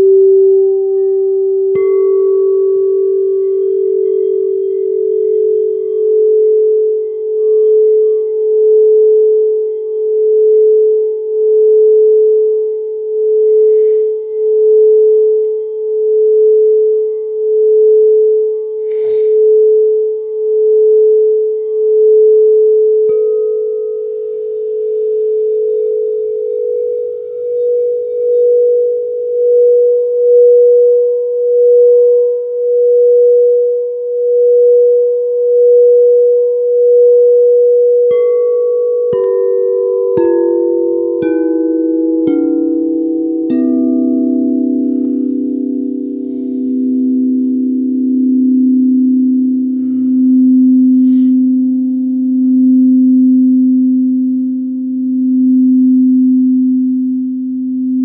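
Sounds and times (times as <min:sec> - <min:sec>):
singing bowls ringing: 0:00.0 - 0:58.0
singing bowl struck: 0:38.0 - 0:57.0.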